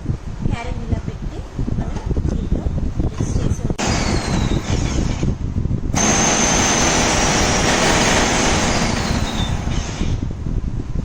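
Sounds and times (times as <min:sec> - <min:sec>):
high motor whine: 0:03.0 - 0:10.4
food processor motor running: 0:03.8 - 0:05.3, 0:06.0 - 0:10.2.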